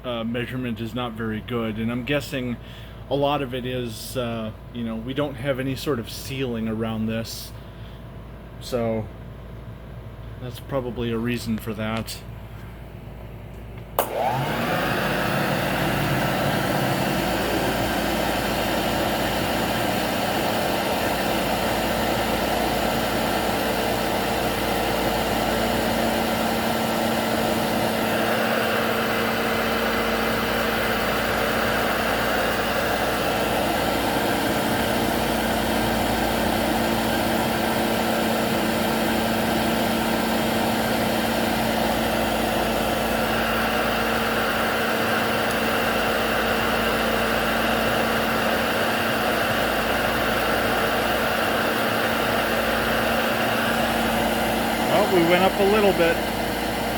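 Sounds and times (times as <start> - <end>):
vacuum cleaner switch click: 13.8 - 15.8
vacuum cleaner motor whine: 14.0 - 56.9.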